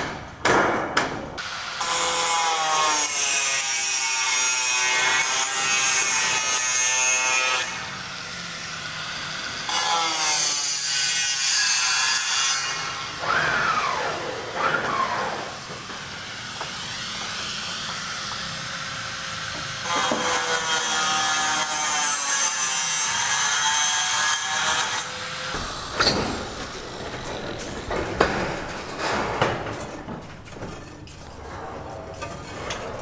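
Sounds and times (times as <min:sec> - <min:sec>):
sharp knocks: 0:00.0 - 0:01.4, 0:25.3 - 0:31.1
power tool whining: 0:12.5 - 0:28.2.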